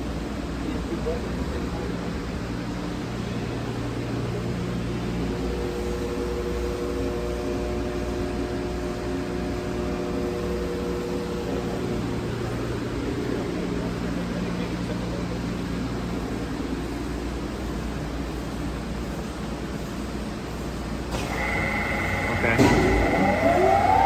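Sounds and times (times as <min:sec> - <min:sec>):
hydraulic pump humming: 0:21.1 - 0:24.0.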